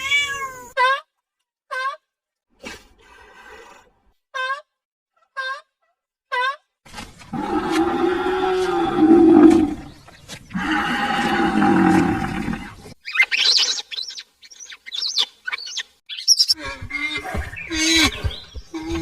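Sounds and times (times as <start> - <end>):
long low animal calls: 7.4 - 9.9, 10.5 - 12.9.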